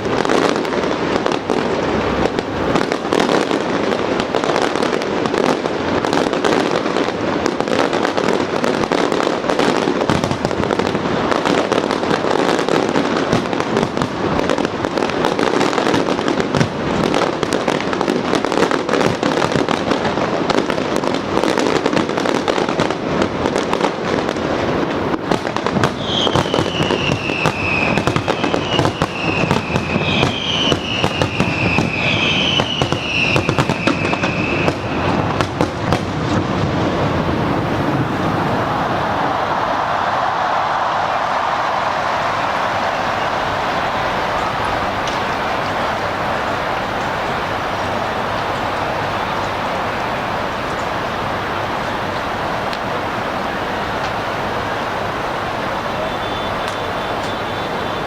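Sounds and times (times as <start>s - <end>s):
fireworks bangs and crackle: 0.0s - 58.0s
falling whistling tone: 26.0s - 35.1s.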